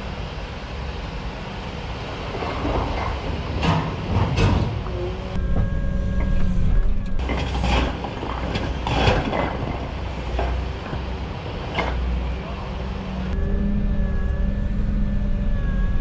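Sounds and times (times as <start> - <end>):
excavator diesel engine: 0.0 - 16.0
metal clanks and scrapes: 2.7 - 4.9, 5.6 - 11.1
thin whine: 13.3 - 16.0.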